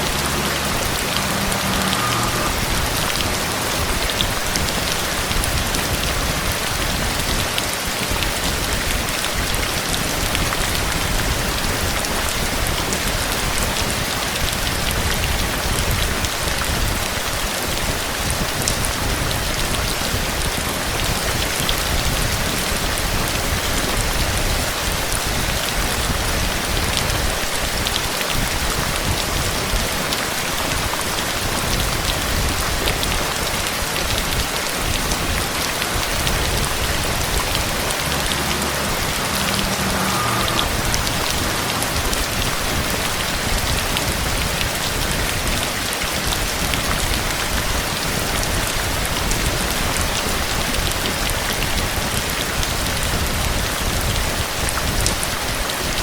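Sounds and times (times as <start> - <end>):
low rumble: 0.0 - 7.5, 33.6 - 45.3
heavy rain falling: 0.0 - 56.0.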